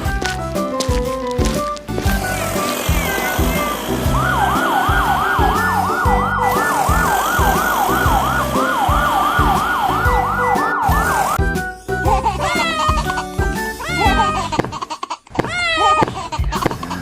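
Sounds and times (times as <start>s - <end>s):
background music: 0.0s - 17.0s
siren yelping: 2.6s - 11.4s.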